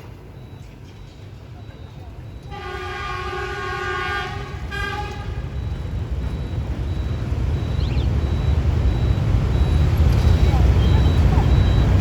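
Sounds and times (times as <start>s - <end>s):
locomotive rumble: 0.0s - 12.0s
locomotive horn: 2.4s - 5.6s.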